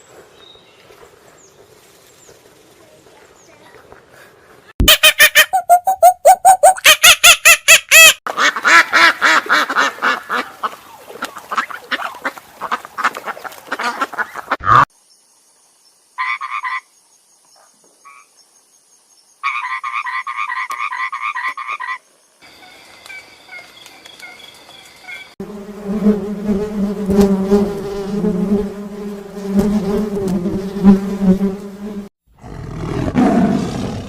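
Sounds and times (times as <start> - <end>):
frogs croaking: 17.6 - 18.4.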